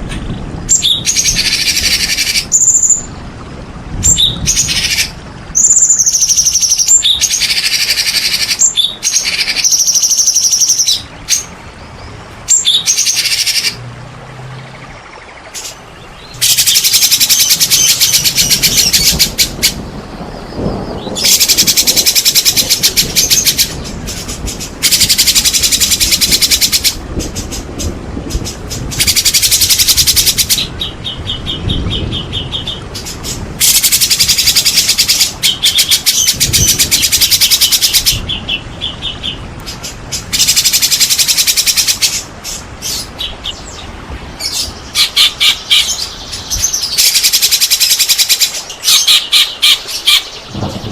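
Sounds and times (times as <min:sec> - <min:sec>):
bird rapid chattering song: 0:00.7 - 0:03.1, 0:04.1 - 0:13.8, 0:14.9 - 0:19.8, 0:20.5 - 0:50.9.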